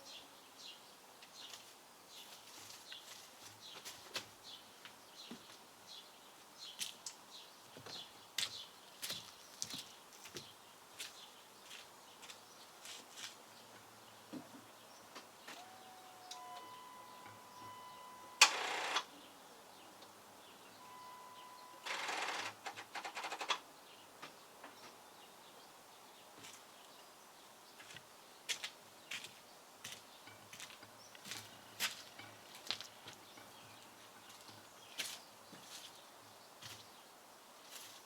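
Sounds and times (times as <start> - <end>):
electronic warning tone: 15.6 - 19.0, 20.8 - 22.5
rapid starter clicking: 21.8 - 23.6.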